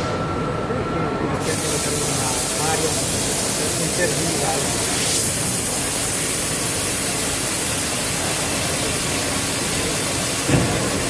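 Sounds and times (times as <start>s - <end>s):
plasma torch hissing: 1.4s - 11.0s
short thump: 10.5s - 10.9s.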